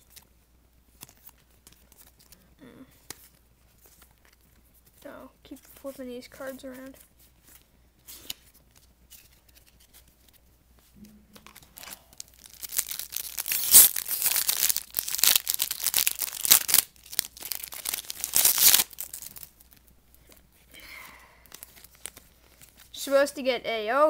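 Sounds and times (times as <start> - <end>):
trading cards handled: 0.9 - 20.6, 21.5 - 22.9
foil wrapper tearing and crinkling: 11.4 - 19.9.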